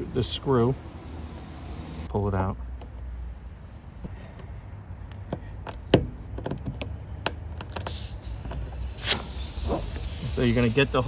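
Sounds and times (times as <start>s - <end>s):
faint hiss: 7.8s - 11.0s.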